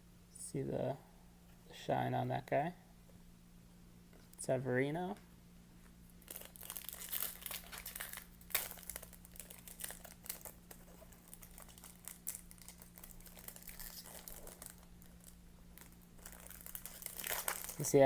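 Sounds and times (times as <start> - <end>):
foil wrapper crinkling and tearing: 6.2 - 18.0.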